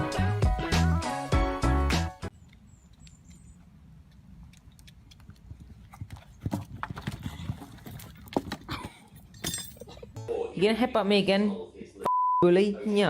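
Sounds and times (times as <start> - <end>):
hooves clopping: 2.3 - 9.4.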